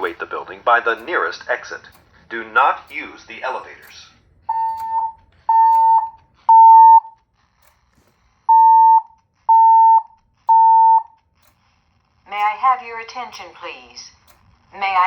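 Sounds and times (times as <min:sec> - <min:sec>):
fire alarm beeps: 0:04.5 - 0:07.2, 0:08.5 - 0:11.2.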